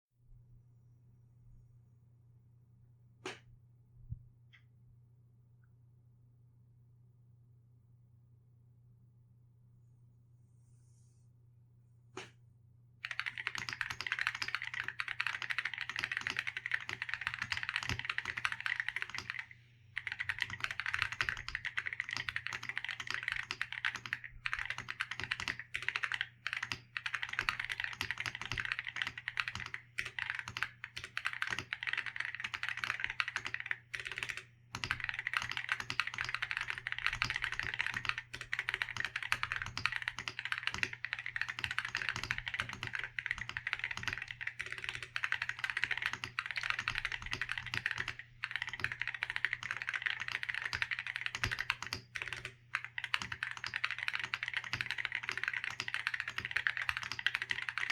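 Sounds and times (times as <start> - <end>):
mechanical keyboard typing: 13.0 - 57.9.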